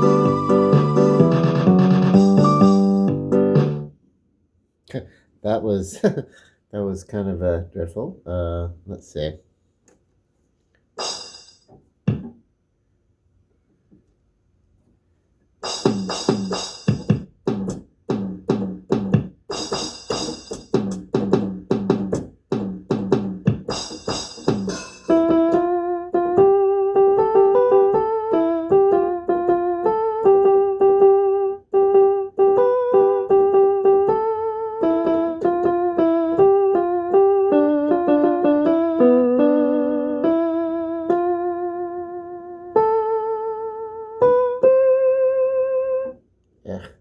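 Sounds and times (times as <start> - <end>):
electronic keyboard playing: 0.0 - 3.9, 15.6 - 46.2.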